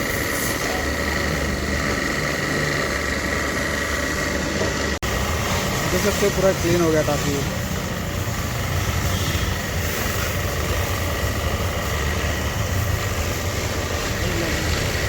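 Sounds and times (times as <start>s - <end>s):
pressure washer running: 0.0s - 15.0s.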